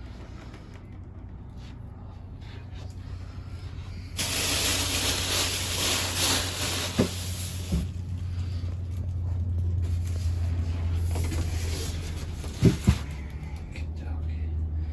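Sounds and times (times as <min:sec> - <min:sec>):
low steady rumble: 0:00.0 - 0:14.9
packaging rustling and scraping: 0:04.1 - 0:08.0, 0:09.8 - 0:13.4.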